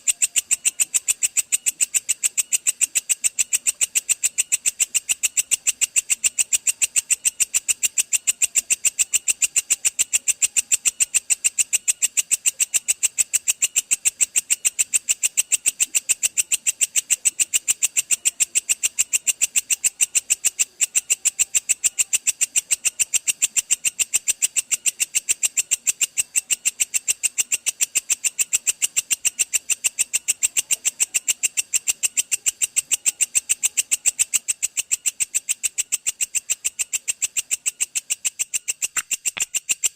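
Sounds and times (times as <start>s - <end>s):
katydid rapid ticking call: 0.0s - 39.9s.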